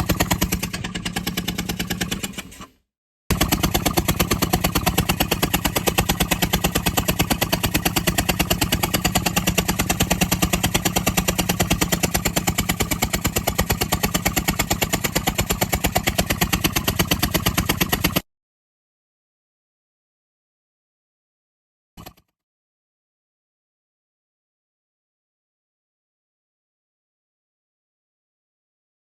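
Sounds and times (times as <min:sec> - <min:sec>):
van engine running: 0:00.0 - 0:02.6, 0:03.3 - 0:18.2.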